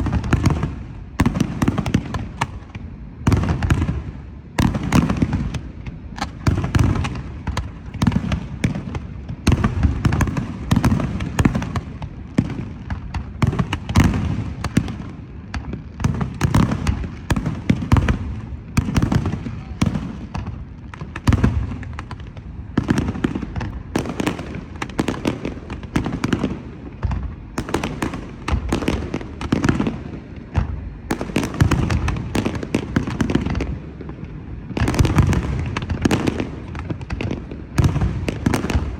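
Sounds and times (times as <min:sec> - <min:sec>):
deep firework booms: 0:00.0 - 0:38.9
fireworks bursting and crackling: 0:00.0 - 0:38.9.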